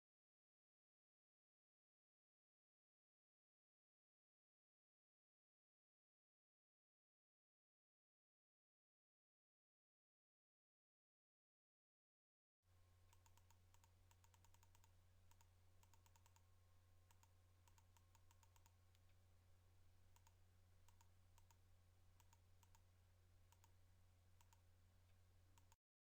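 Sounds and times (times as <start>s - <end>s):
faint irregular clicks: 12.7s - 19.3s, 20.0s - 25.8s
low electrical hum: 12.7s - 25.8s.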